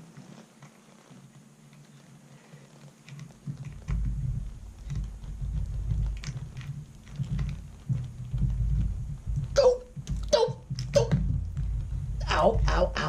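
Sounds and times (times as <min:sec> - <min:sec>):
uneven low rumble: 0:03.4 - 0:13.0.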